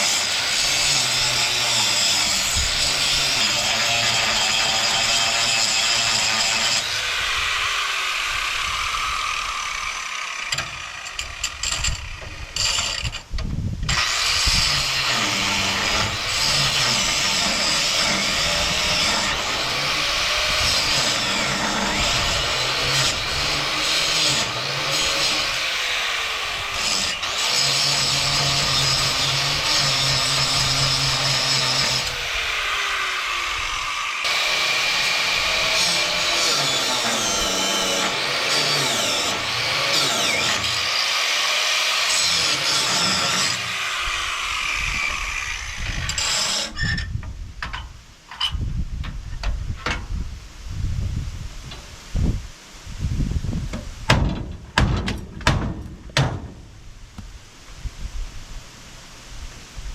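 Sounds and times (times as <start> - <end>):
angle grinder cutting steel: 0.0 - 13.2, 13.9 - 47.0.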